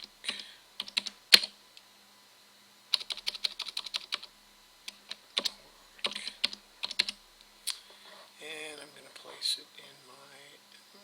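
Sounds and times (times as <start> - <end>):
computer keyboard typing: 0.0 - 1.5, 2.9 - 4.3, 4.9 - 7.2.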